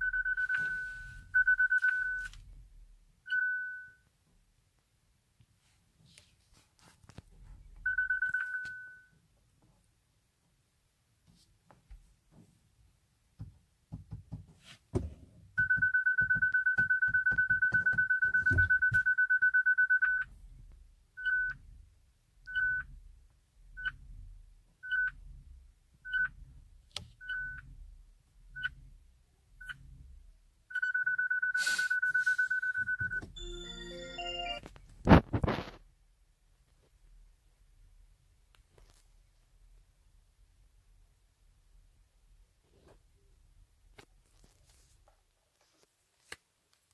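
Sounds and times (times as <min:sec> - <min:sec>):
car warning chime beeps: 0:15.6 - 0:20.3, 0:27.2 - 0:27.7, 0:30.8 - 0:34.6.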